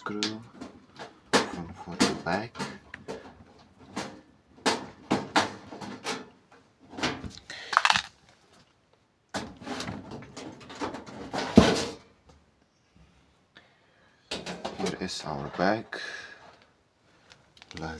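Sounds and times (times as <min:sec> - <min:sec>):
computer case knocks and scrapes: 0:10.8 - 0:12.0.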